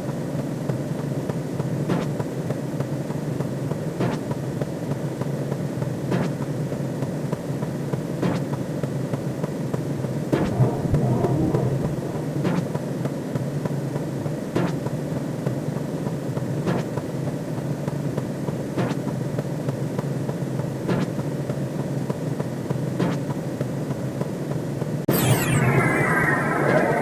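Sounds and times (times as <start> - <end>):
low sci-fi drone: 10.3 - 13.4, 25.1 - 27.0.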